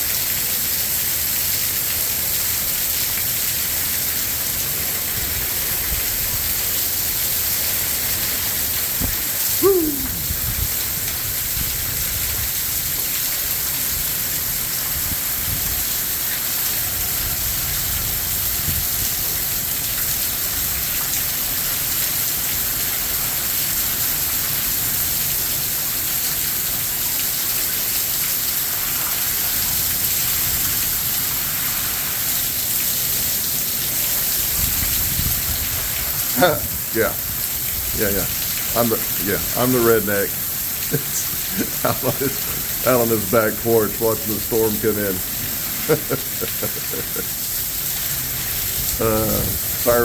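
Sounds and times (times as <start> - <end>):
heavy rain pouring: 0.0 - 50.0
wind gusting against microphone: 8.9 - 12.7, 34.4 - 39.6.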